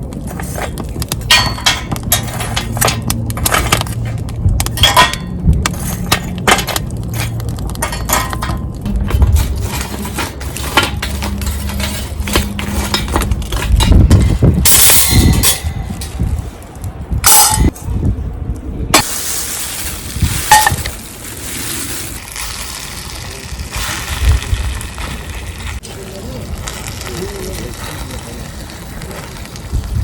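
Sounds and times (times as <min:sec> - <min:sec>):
hard objects clinking and clanging: 0:00.0 - 0:16.4, 0:17.2 - 0:17.8, 0:19.0 - 0:23.0.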